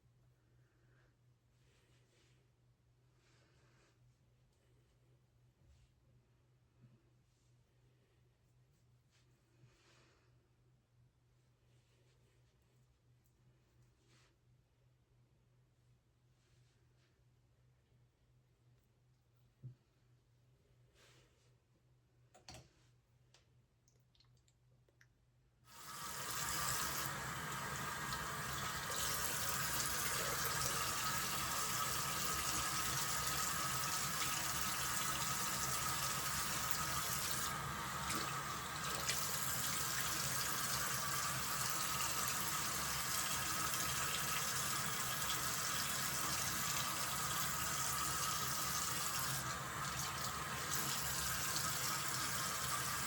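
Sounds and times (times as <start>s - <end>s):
tap water running into sink: 25.8s - 53.0s.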